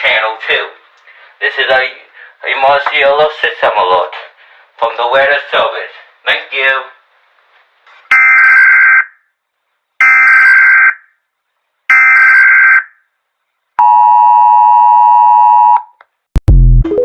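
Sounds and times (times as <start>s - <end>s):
two-tone alert tone: 16.5s - 17.0s.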